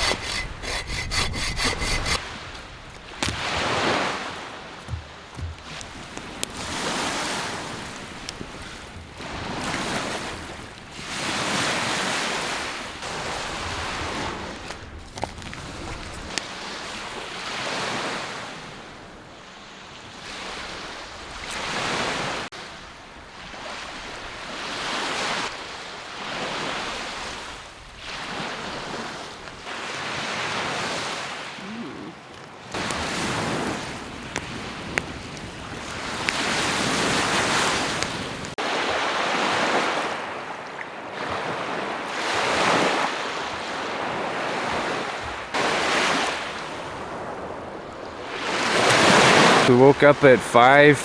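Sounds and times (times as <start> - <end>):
wind: 0.0 - 51.0
waves washing onto shore: 2.2 - 19.0, 32.4 - 51.0.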